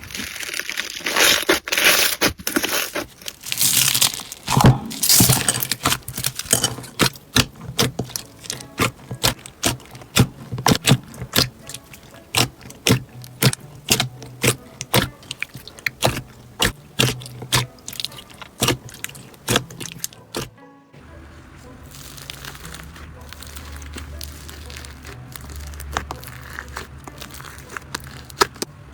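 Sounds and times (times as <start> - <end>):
slime clicking and popping: 3.4 - 20.5, 21.9 - 28.7.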